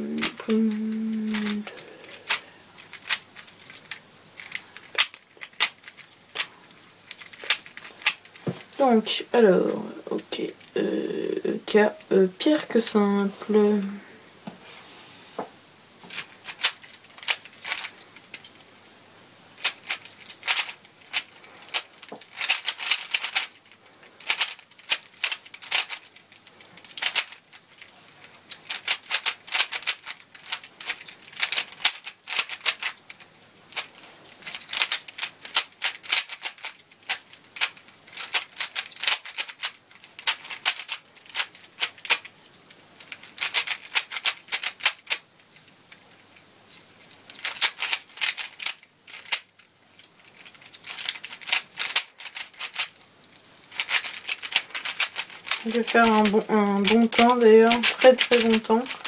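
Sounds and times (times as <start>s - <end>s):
puzzle cube plastic clicks: 0.1s - 8.8s, 16.1s - 18.6s, 19.6s - 42.3s, 43.0s - 46.4s, 47.0s - 59.0s.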